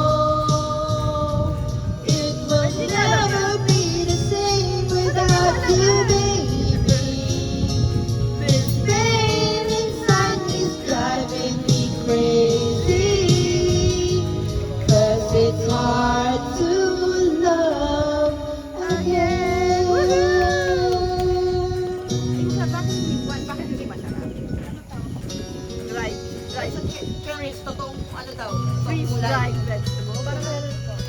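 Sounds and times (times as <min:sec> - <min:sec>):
person singing: 0:00.0 - 0:22.3
slow pop love ballad: 0:00.0 - 0:23.6.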